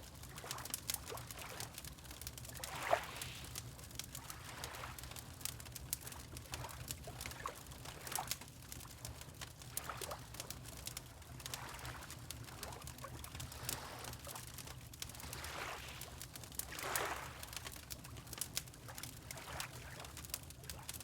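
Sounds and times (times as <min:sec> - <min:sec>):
water lapping: 0:02.6 - 0:03.5, 0:04.2 - 0:05.2, 0:11.4 - 0:14.4, 0:15.1 - 0:17.6, 0:19.3 - 0:20.2.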